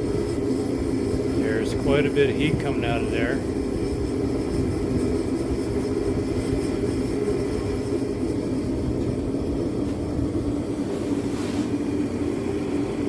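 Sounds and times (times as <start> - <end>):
propane heater fan and burner rumble: 0.0 - 13.0.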